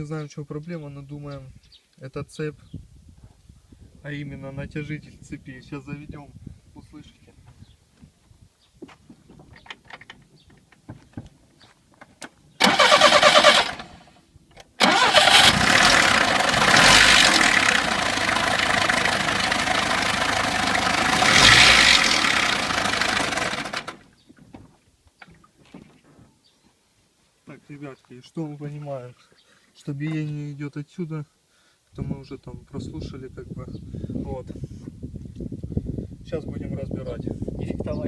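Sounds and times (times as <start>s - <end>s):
starter cranking: 12.6s - 13.8s, 14.8s - 24.0s
engine knock: 15.4s - 24.0s
car engine running and revving: 15.5s - 23.8s.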